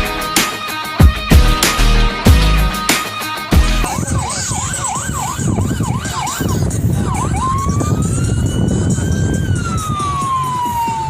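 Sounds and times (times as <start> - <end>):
police siren yelp and wail: 3.8 - 11.0.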